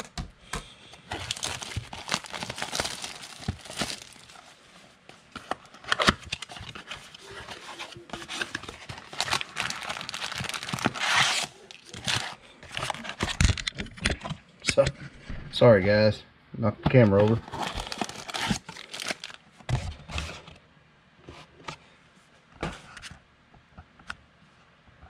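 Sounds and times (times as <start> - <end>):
wrappers tearing and crinkling: 1.1 - 4.5, 5.9 - 13.5, 17.4 - 19.4.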